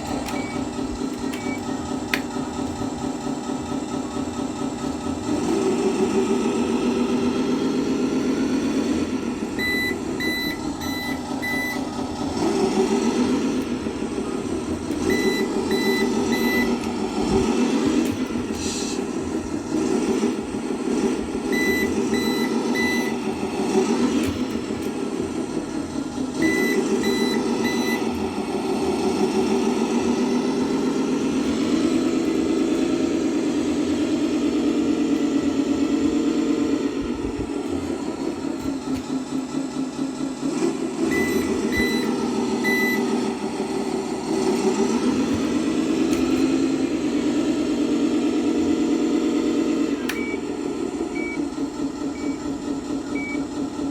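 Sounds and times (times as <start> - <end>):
simulated truck engine: 0.0 - 53.9
short reversing beeps: 15.1 - 16.8.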